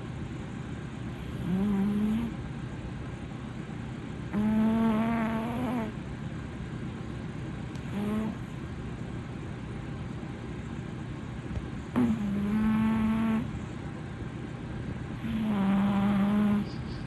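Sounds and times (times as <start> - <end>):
cat snoring: 1.2 - 2.4, 4.3 - 6.0, 7.8 - 8.4, 12.0 - 13.5, 15.2 - 16.7.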